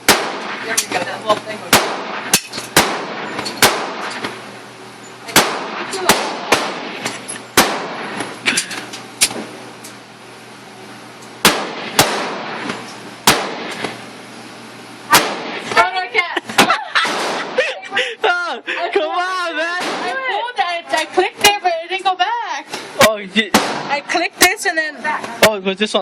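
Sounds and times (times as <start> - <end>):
gunshots with echo: 0.1 - 0.6, 1.7 - 4.2, 5.3 - 7.0, 11.4 - 12.6, 13.3 - 13.8, 15.1 - 15.6.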